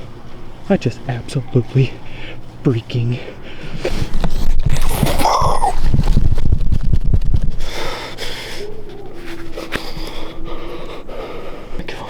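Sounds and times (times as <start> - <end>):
heavy excited breathing: 1.9 - 6.2, 7.5 - 11.9
microphone handling noise: 3.7 - 7.9.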